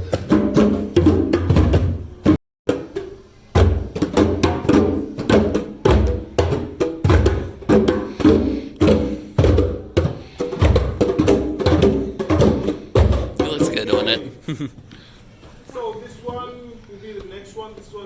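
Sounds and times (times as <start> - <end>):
hand drums playing: 0.0 - 14.4.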